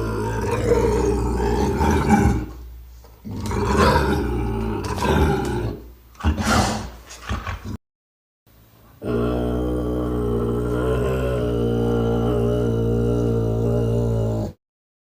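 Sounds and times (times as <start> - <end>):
creature roaring calls: 0.0 - 2.6, 3.3 - 7.0, 9.0 - 14.6.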